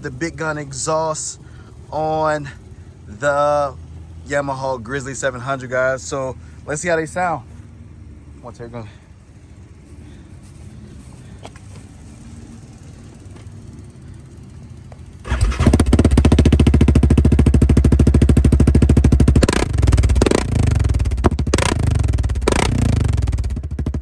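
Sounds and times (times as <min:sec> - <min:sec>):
atv engine revving: 0:10.1 - 0:24.0.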